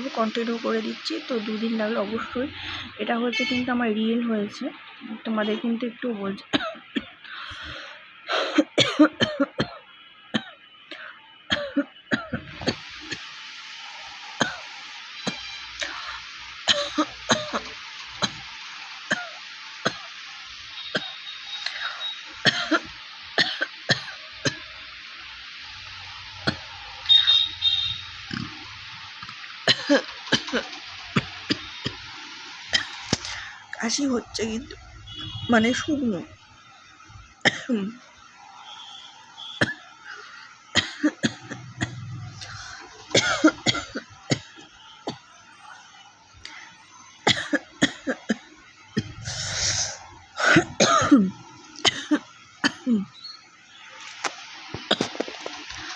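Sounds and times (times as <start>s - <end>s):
steady hiss: 0.0s - 55.9s
person dry coughing: 8.3s - 9.8s, 22.5s - 24.1s, 43.2s - 44.5s, 49.0s - 53.0s.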